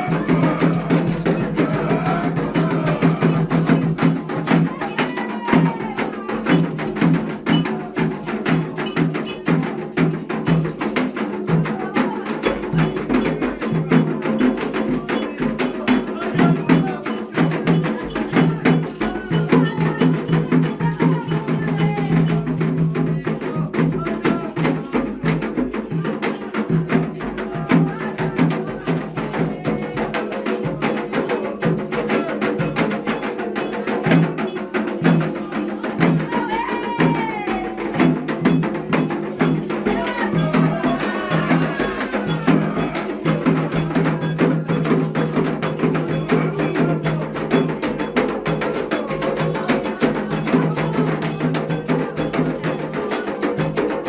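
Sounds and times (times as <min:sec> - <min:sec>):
fast hand-drumming: 0:00.0 - 0:54.0
voices singing: 0:00.0 - 0:54.0
struck bell pattern: 0:37.5 - 0:54.0.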